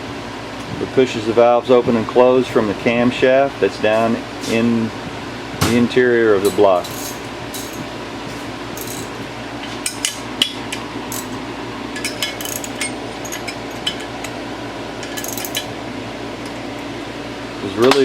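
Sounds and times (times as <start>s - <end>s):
fan hum: 0.0s - 18.0s
metallic clicks of hand tools: 8.8s - 9.1s, 12.0s - 14.4s.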